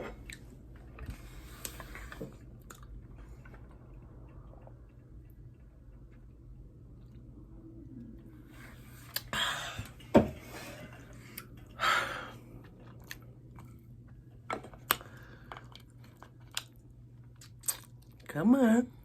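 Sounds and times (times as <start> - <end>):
wet chewing and lip smacking: 0.2 - 7.4, 12.6 - 18.2.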